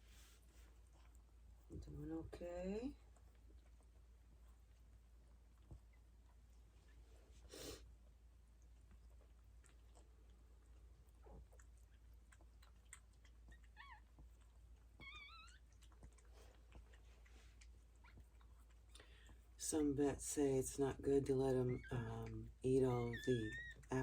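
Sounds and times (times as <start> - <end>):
dog chewing and licking: 3.0 - 7.0, 8.5 - 19.6
puppies squeaking: 13.4 - 14.2, 15.0 - 16.0, 22.9 - 24.0.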